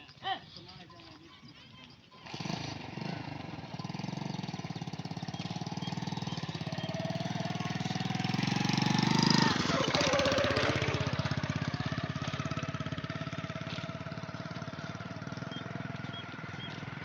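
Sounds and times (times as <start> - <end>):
small engine puttering: 0.0 - 17.0.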